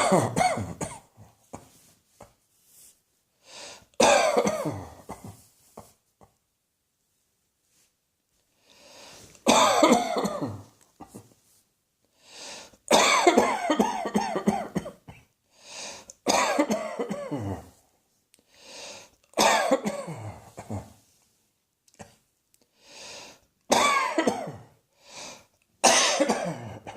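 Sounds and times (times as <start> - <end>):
person coughing: 0.0 - 2.4, 4.0 - 6.3, 9.4 - 11.3, 12.9 - 15.3, 16.2 - 17.8, 19.3 - 21.0, 23.7 - 24.8, 25.8 - 26.9
breath drawn in: 8.6 - 9.4.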